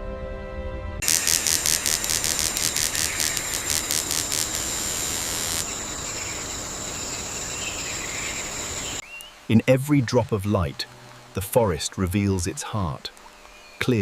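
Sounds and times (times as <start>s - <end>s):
high-pitched insect buzz: 1.0s - 9.0s
insects pulsing chorus: 1.0s - 9.0s.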